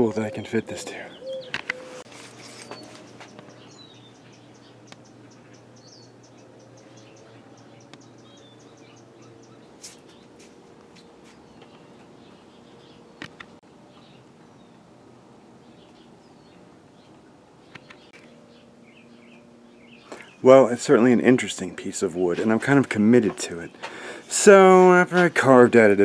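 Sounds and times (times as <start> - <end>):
small birds chirping: 0.0 - 14.9, 15.6 - 25.9
sharp clicks: 1.5 - 1.8, 17.7 - 18.3.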